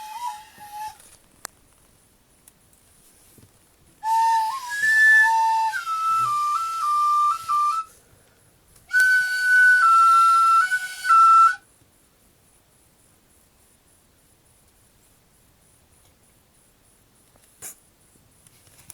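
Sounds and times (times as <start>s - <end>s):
tin whistle playing: 0.0s - 1.2s, 4.0s - 7.9s, 8.9s - 11.6s.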